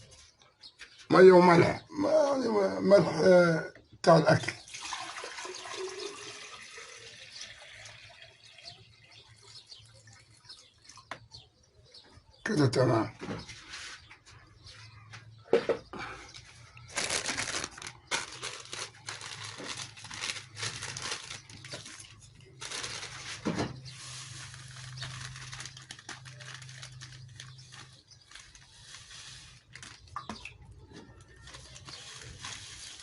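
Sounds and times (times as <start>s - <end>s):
crinkling and rustling: 12.9s - 33.0s.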